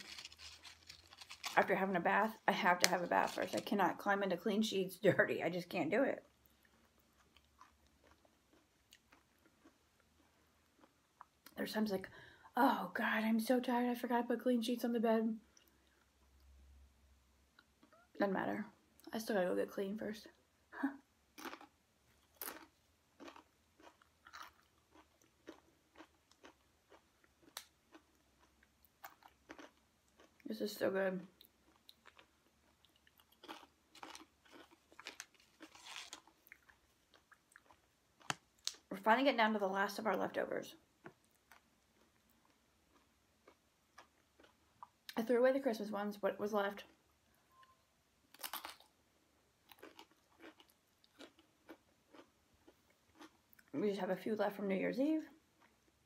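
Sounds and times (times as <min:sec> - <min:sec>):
crunchy chewing: 0:00.0 - 0:01.7, 0:21.4 - 0:30.5, 0:31.4 - 0:38.8, 0:49.7 - 0:53.7
crisp crunching: 0:00.0 - 0:03.7, 0:33.1 - 0:38.8.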